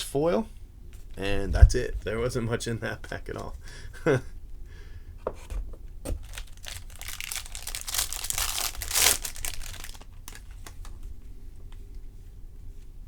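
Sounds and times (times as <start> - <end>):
wrapper tearing and crinkling: 6.1 - 10.9.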